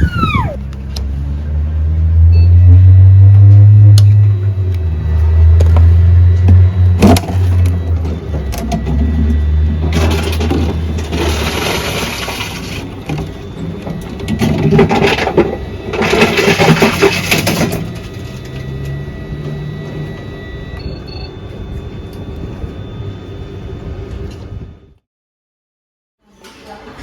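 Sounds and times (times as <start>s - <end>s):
recycling machine motor hum: 0.6s - 25.0s
bottles rushing and crackling: 7.0s - 18.3s.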